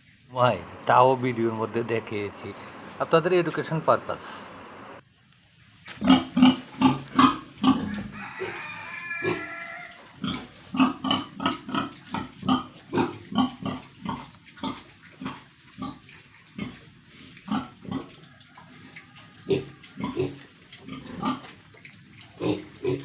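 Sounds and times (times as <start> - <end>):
pigs grunting: 6.0 - 8.6, 9.2 - 23.0
pig squealing: 6.0 - 16.9, 17.5 - 21.6.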